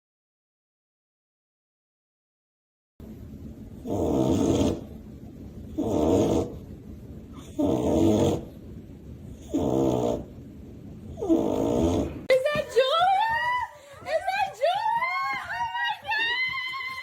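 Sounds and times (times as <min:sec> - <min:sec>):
dog snoring: 0:03.8 - 0:05.0, 0:05.7 - 0:06.6, 0:07.4 - 0:08.6, 0:09.3 - 0:10.3, 0:11.2 - 0:12.3.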